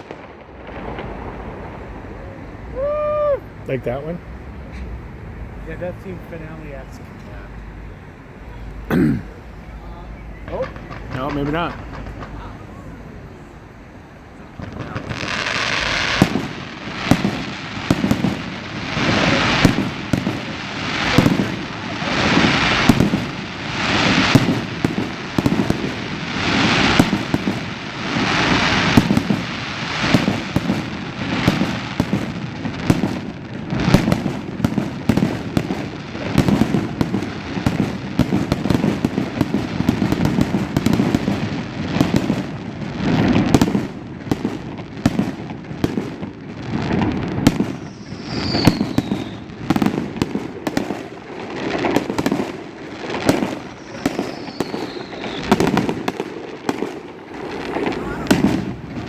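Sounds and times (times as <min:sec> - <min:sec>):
firework cracks and crackling: 0:00.0 - 0:04.7, 0:09.7 - 0:59.0
firework shells bursting: 0:00.0 - 0:05.0, 0:05.6 - 0:59.0.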